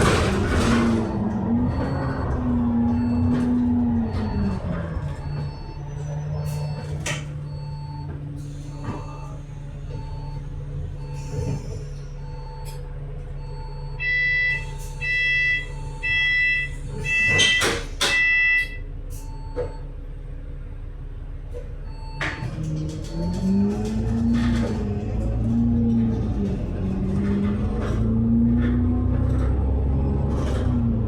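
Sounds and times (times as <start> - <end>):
door warning beeps: 0.0 - 12.8, 13.4 - 19.9, 21.9 - 25.1
bus doors shutting: 0.0 - 31.0
bus engine idling: 0.0 - 31.0.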